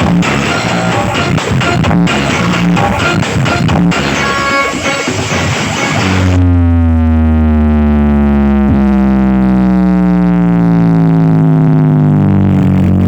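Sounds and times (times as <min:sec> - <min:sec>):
deep buzzing drone chord: 0:06.0 - 0:13.0.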